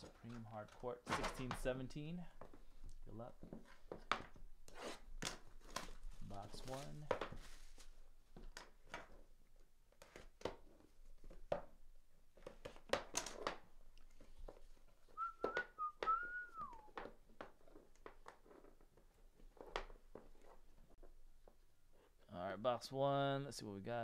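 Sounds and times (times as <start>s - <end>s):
person whistling: 15.1s - 17.0s.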